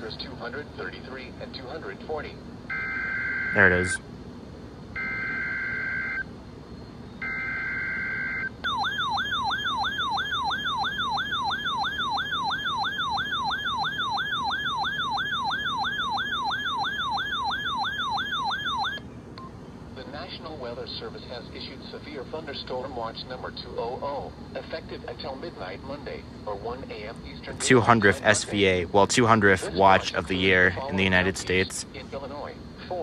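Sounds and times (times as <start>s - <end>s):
warbling siren-like attention tone: 7.2s - 19.0s.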